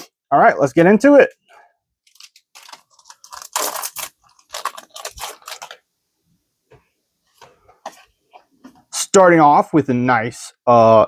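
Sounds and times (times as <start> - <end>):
wrapper crinkling and tearing: 2.0 - 5.8.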